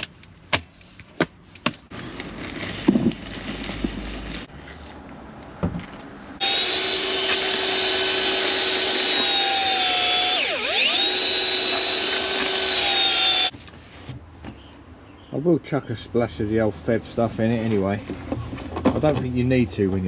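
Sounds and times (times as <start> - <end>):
electric drill mixer whining: 6.4 - 13.5.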